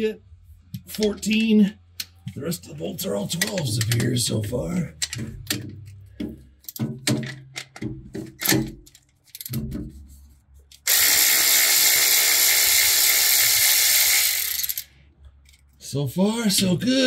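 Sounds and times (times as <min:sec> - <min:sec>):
clicks and knocks of bolt: 0:05.0 - 0:10.0
power tool running: 0:10.9 - 0:14.8.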